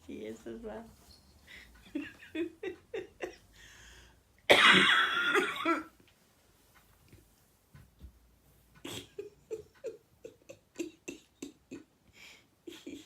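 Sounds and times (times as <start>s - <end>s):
person coughing loudly: 4.5s - 5.9s.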